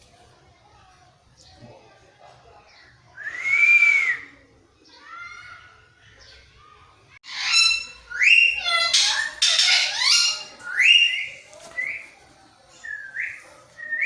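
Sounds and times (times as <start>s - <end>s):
parrot squawking: 7.2s - 11.3s.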